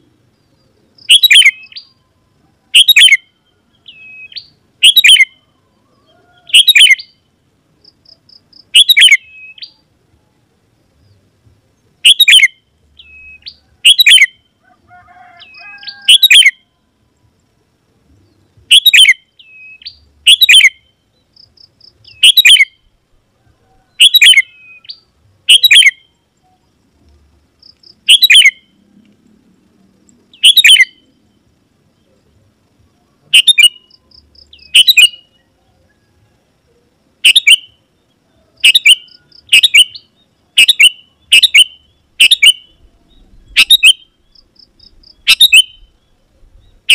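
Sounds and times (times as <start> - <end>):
bulbul calling: 1.0 - 2.0, 2.7 - 7.3, 7.9 - 9.8, 12.0 - 14.5, 15.4 - 16.7, 18.3 - 22.9, 23.7 - 26.5, 27.6 - 28.7, 30.3 - 31.2, 33.2 - 35.8, 37.2 - 46.9.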